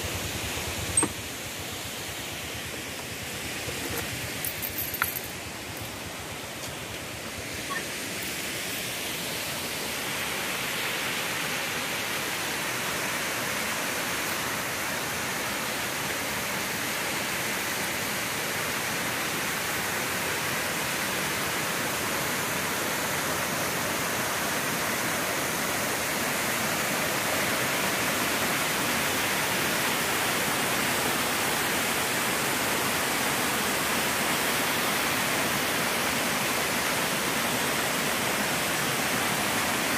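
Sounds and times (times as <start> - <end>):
waterfall rushing: 5.2 - 39.9.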